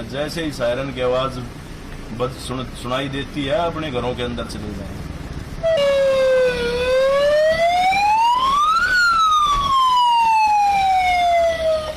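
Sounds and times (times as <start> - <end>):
police siren wailing: 5.6 - 11.9.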